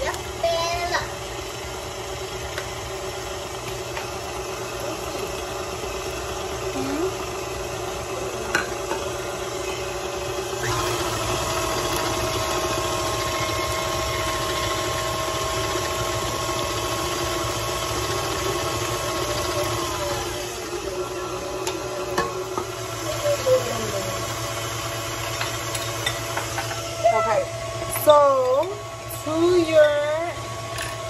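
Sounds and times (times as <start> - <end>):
electric mixer motor whine: 0.0 - 31.0.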